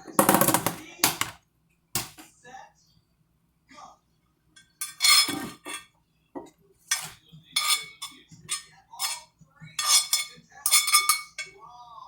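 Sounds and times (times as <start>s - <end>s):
metal utensil clinking on dishes: 4.6s - 5.9s, 6.9s - 11.6s.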